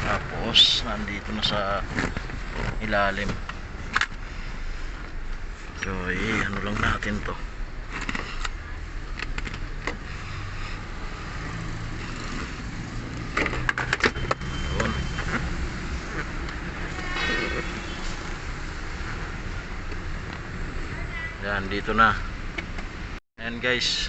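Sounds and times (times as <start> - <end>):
scraping squeak: 14.1 - 15.4.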